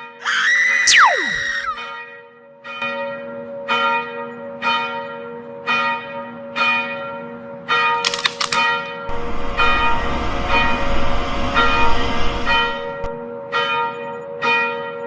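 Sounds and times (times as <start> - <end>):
loud rushing noise: 9.1 - 13.1.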